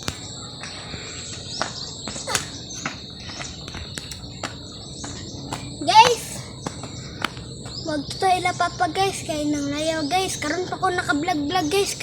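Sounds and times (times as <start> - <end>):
insects droning: 0.0 - 12.0
sharp clicks: 2.3 - 4.6.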